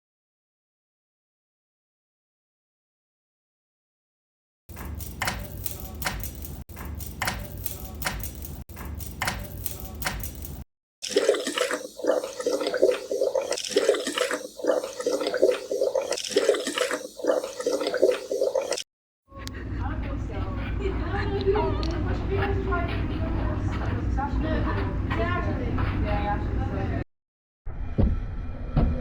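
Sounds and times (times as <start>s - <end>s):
toilet flushing: 11.0s - 18.8s.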